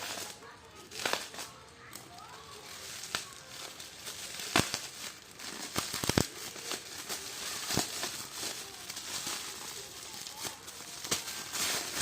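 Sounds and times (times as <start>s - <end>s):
packaging crinkling and rustling: 0.0s - 12.0s.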